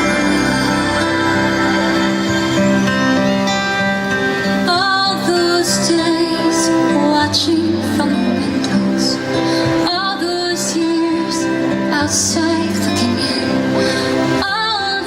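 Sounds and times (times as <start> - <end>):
person singing: 0.0 - 15.0
slow tender music: 0.0 - 15.0.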